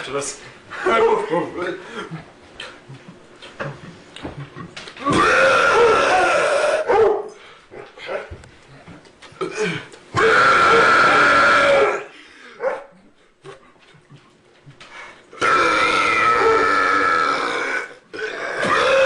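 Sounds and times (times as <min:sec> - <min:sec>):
person burping: 0:05.0 - 0:06.9, 0:15.4 - 0:19.0.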